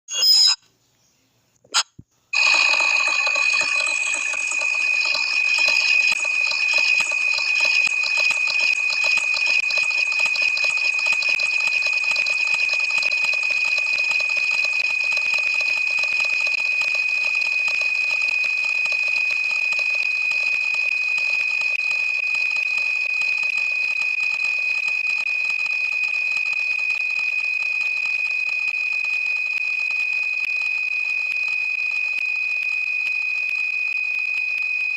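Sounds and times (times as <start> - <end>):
electronic sound effects: 2.4 - 16.7
steady high-pitched tone: 2.4 - 23.8.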